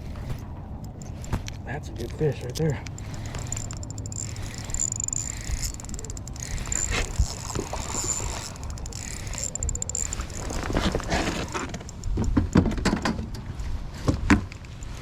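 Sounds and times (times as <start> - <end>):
fishing reel clicking: 0.8 - 1.6, 2.5 - 12.6.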